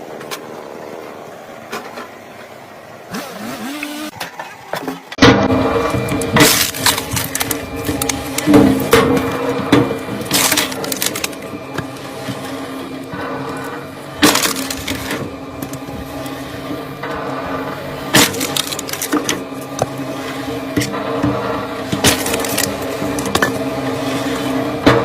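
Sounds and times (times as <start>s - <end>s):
steady hum: 0.0s - 25.0s
firewood cracking and splitting: 5.2s - 25.0s.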